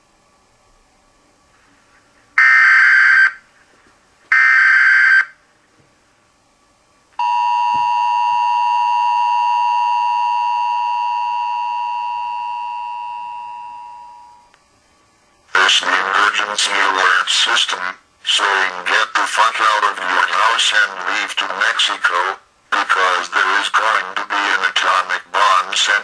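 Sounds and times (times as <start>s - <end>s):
two-tone attention signal: 7.2s - 14.5s.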